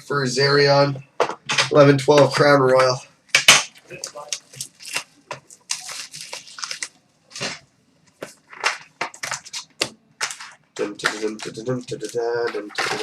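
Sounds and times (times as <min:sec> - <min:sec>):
packaging crinkling and tearing: 0:03.7 - 0:07.6, 0:08.2 - 0:13.0.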